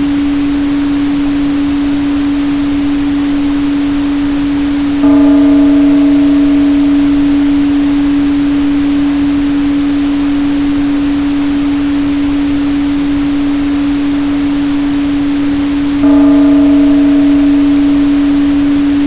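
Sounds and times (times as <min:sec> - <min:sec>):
higher ringing overtones: 0:04.4 - 0:19.0
synthetic sine tone: 0:04.8 - 0:19.0.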